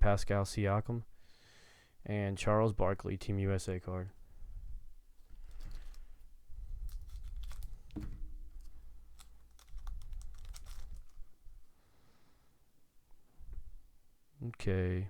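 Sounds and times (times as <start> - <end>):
wrapper tearing and crinkling: 5.2 - 11.3
cards clicking and sliding: 8.6 - 11.2.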